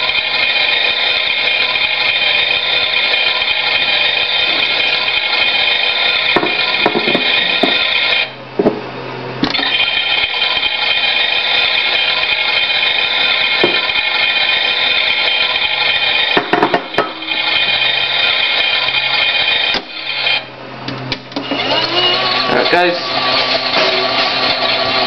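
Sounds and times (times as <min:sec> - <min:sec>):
toy washing machine motor whine: 0:00.0 - 0:08.4, 0:09.4 - 0:20.5, 0:21.4 - 0:25.0
knocks: 0:06.4 - 0:07.8, 0:16.4 - 0:17.1.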